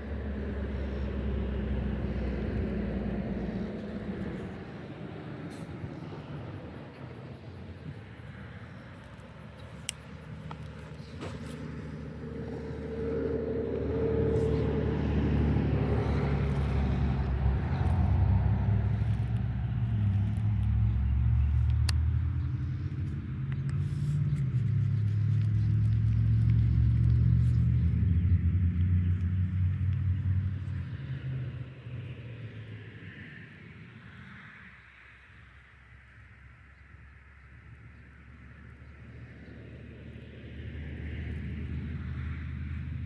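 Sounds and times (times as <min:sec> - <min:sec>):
vehicle engine rumble: 0:00.0 - 0:43.0.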